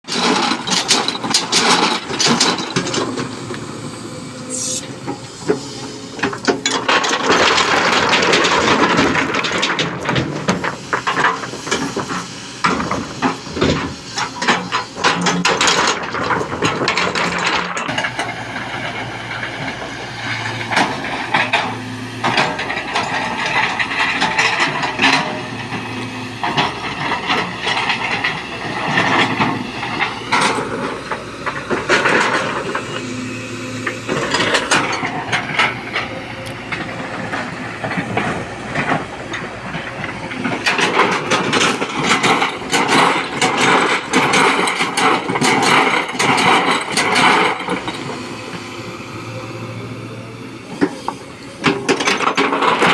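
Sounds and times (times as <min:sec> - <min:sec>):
excavator diesel engine hum: 0:00.0 - 0:52.9
hydraulic hiss: 0:04.5 - 0:05.0.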